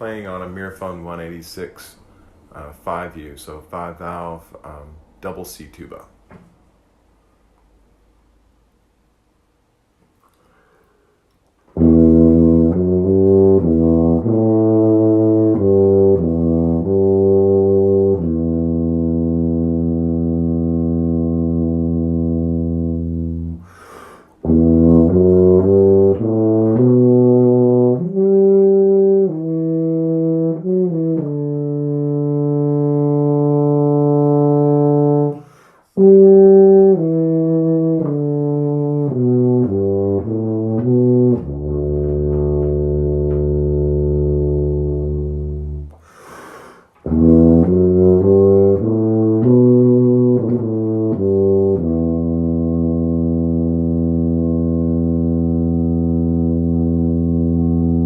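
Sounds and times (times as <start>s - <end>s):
player breathing in: 10.4s - 11.2s, 23.6s - 24.4s, 35.4s - 36.0s, 46.0s - 47.0s
tuba playing: 11.6s - 46.4s, 47.0s - 58.0s.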